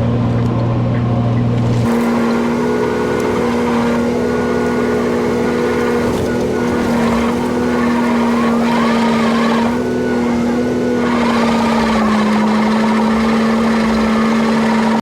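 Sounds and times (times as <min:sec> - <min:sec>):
bulldozer diesel engine running: 0:00.0 - 0:15.0
faint wavering squeak: 0:03.6 - 0:15.0.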